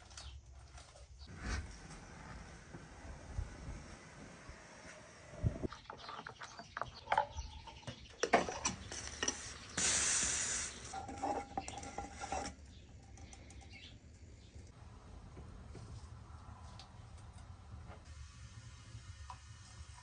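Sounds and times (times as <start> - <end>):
steady hiss: 8.9 - 11.1, 18.0 - 20.0
dishes and utensils clinking: 10.9 - 13.8.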